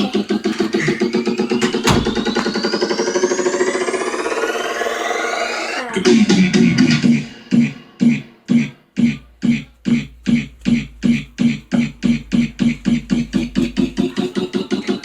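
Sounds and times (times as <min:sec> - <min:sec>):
accelerating pitched pulse: 0:01.2 - 0:06.3.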